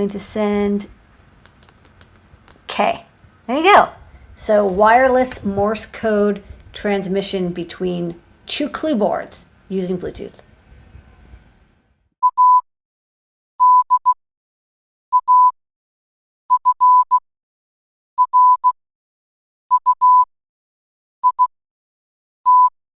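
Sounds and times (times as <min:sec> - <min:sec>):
morse code beeps: 0:12.3 - 0:12.6, 0:13.6 - 0:14.1, 0:15.2 - 0:15.5, 0:16.6 - 0:17.1, 0:18.2 - 0:18.7, 0:19.8 - 0:20.2, 0:21.2 - 0:21.4, 0:22.5 - 0:22.7.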